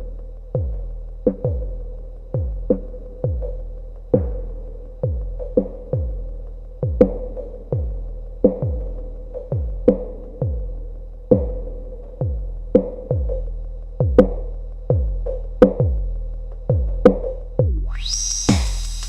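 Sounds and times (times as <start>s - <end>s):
deep electronic kick drums: 0.0s - 19.0s
rising synth sweep: 17.7s - 19.0s
bright hissy layer: 18.0s - 19.0s.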